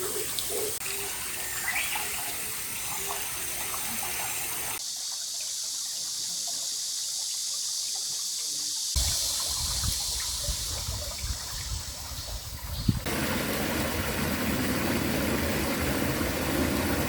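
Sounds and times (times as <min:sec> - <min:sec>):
stream trickling: 0:00.0 - 0:17.0
wind rumble on microphone: 0:09.0 - 0:17.0.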